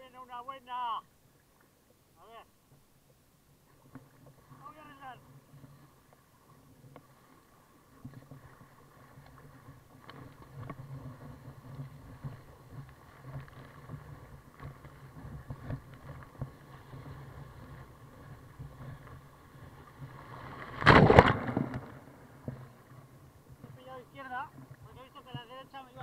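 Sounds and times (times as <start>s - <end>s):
water rushing around kayak: 0.0s - 26.0s
small splashes: 3.7s - 23.1s.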